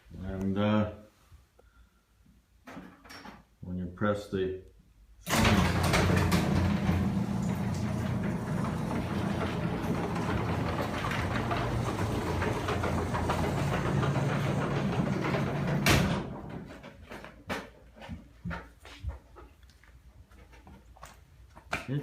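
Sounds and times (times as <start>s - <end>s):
garage door opener motor: 5.2s - 16.7s.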